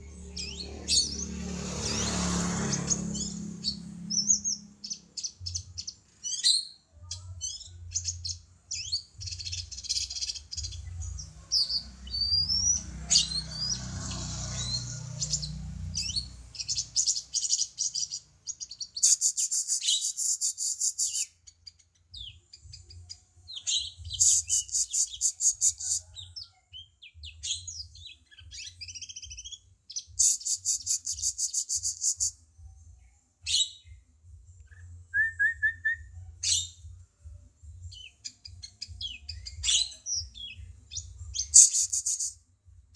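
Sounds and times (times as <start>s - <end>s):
songbird chirps and whistles: 3.2s - 13.2s, 14.7s - 32.4s, 33.4s - 34.0s, 34.6s - 36.9s, 37.9s - 42.4s
rapid buzzy bird trills: 11.5s - 21.4s, 24.1s - 26.0s, 30.1s - 32.3s, 41.4s - 42.4s.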